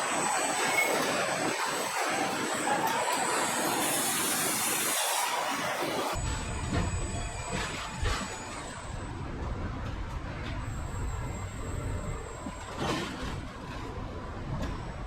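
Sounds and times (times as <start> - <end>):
machinery rumble: 0.0 - 15.0
thin high whine: 0.0 - 15.0
hissing burst: 3.0 - 6.2.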